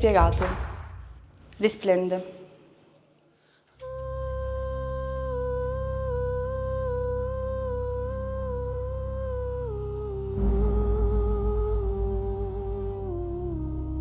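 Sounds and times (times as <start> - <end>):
deep low drone: 3.8 - 14.0.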